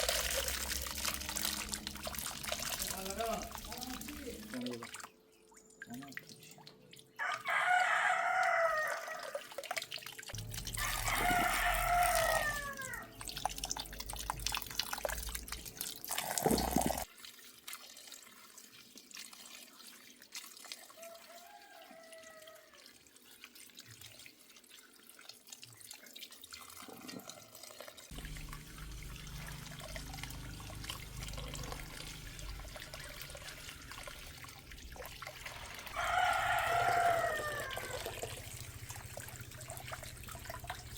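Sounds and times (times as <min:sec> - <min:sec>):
rooster crowing: 0:07.2 - 0:09.4, 0:10.8 - 0:13.0, 0:21.0 - 0:22.8, 0:35.5 - 0:38.4.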